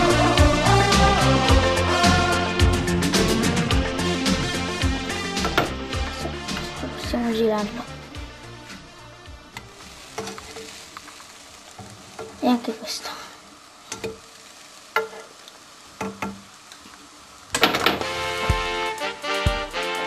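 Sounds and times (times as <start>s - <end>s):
music: 0.0s - 11.5s, 17.6s - 20.0s
batter sizzling in a pan: 0.0s - 20.0s.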